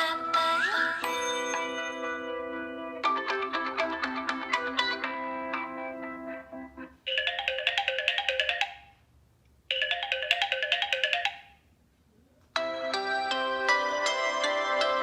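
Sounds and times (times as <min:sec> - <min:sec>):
bell-like phone ringtone: 0:01.0 - 0:03.1, 0:07.1 - 0:09.0, 0:09.7 - 0:11.6
fuller phone ringtone: 0:01.0 - 0:03.6, 0:07.1 - 0:09.0, 0:09.7 - 0:11.6.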